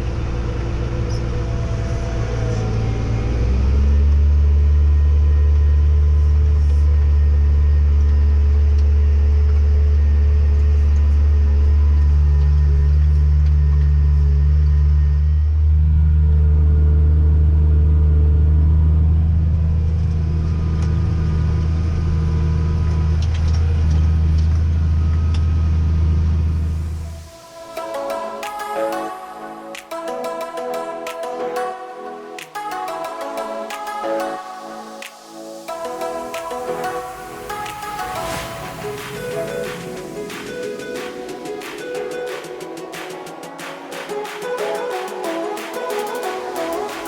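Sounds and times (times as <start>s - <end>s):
diesel engine droning: 0.0s - 27.0s.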